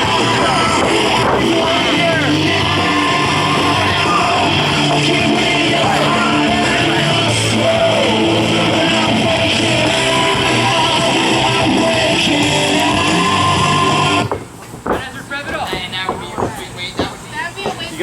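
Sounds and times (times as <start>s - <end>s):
loud rock music: 0.0s - 14.3s
person singing and yelling: 0.0s - 14.3s.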